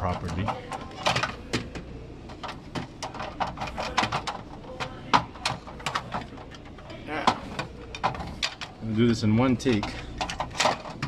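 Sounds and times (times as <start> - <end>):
plastic tray clicking and knocking: 0.0 - 8.7.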